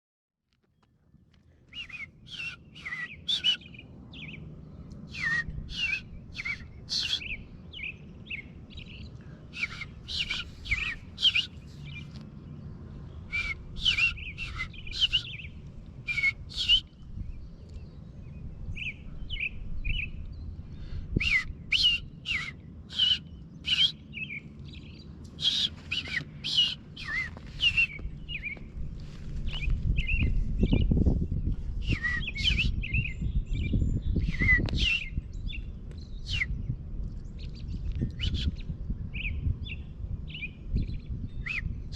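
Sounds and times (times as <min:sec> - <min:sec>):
birds chirping: 0:00.7 - 0:41.9
steady low rumble: 0:01.0 - 0:41.9.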